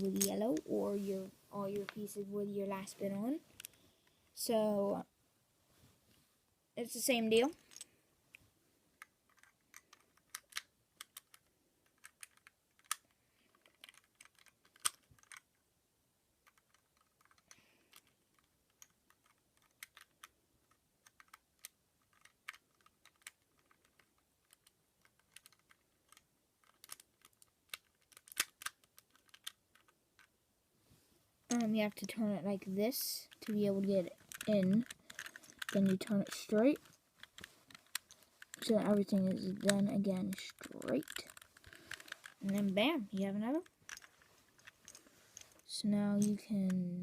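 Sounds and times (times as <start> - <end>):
puzzle cube plastic clicks: 0.0 - 0.6, 7.4 - 8.0, 8.9 - 15.7, 16.4 - 30.4, 31.4 - 47.0.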